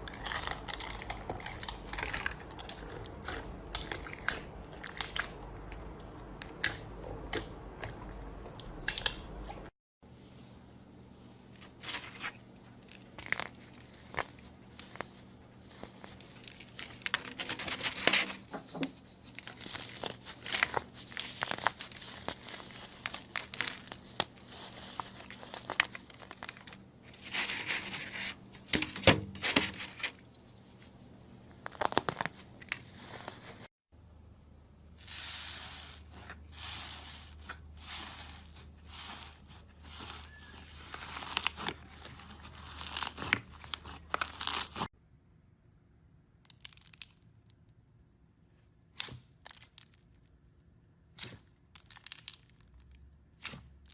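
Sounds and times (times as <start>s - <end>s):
slime squishing and crackling: 0.0s - 6.8s, 12.8s - 18.4s, 19.1s - 28.2s, 31.6s - 33.6s, 35.1s - 44.9s, 46.5s - 47.6s, 48.9s - 50.2s, 51.2s - 53.9s.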